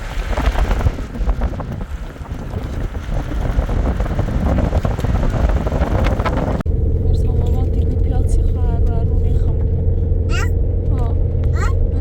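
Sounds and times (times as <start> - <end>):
wind buffeting microphone: 0.0 - 12.0.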